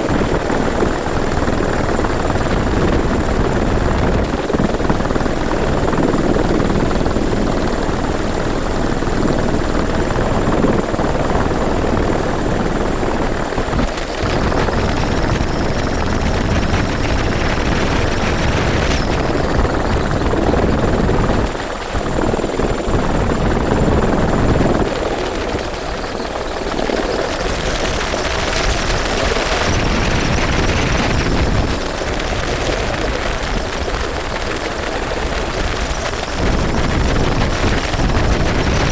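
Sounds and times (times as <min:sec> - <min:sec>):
helicopter rotor and engine: 0:00.0 - 0:38.9.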